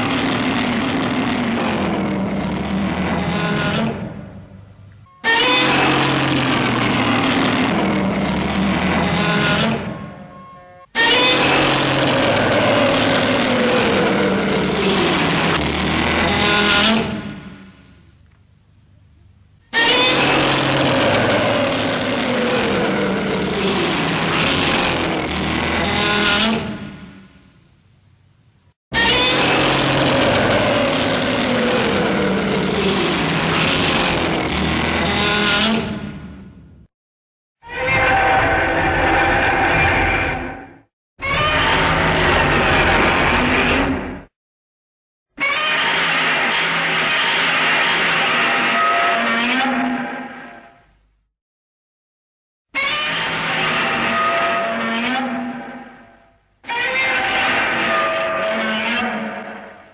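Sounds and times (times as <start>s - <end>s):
monster roar sliding downward: 11.4s - 17.3s, 20.1s - 26.0s, 29.0s - 35.9s.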